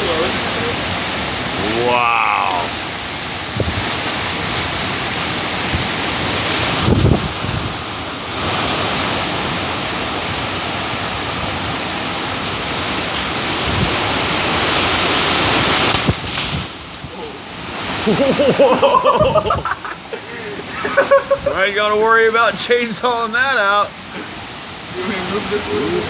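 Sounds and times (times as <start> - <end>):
strong wind rushing: 1.5 - 4.0, 5.6 - 7.9, 13.6 - 14.4, 19.1 - 19.8, 21.0 - 21.7
wind thump on microphone: 3.6 - 4.0, 6.8 - 7.8, 15.9 - 16.8.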